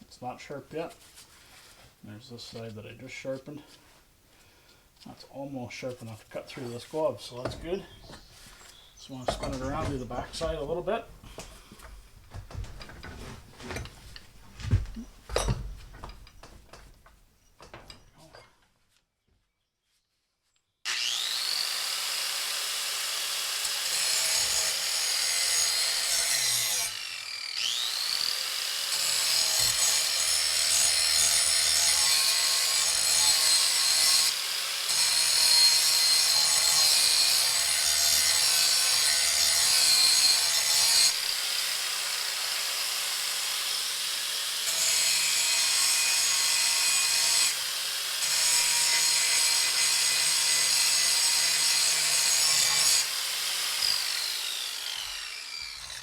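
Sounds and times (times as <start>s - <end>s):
grinder grinding steel blade: 20.9s - 56.0s.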